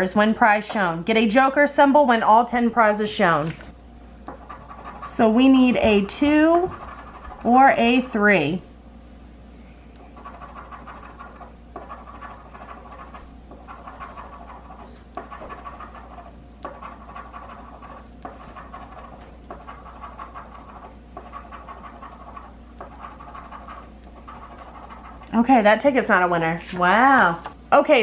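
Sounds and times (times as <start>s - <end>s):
lottery ticket being scratched: 4.3s - 8.3s, 10.2s - 25.4s.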